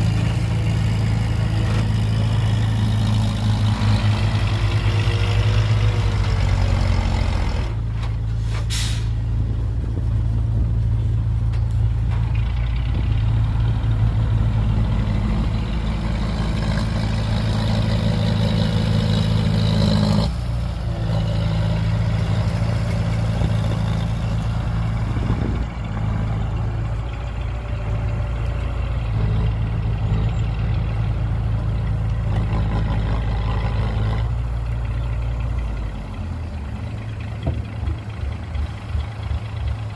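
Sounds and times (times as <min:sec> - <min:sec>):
diesel engines running: 0:00.0 - 0:39.9
short hiss: 0:08.4 - 0:09.2.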